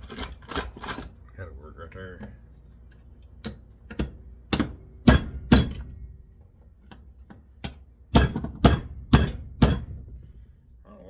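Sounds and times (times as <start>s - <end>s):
hammer striking steel punch: 3.4s - 6.1s, 7.6s - 10.2s.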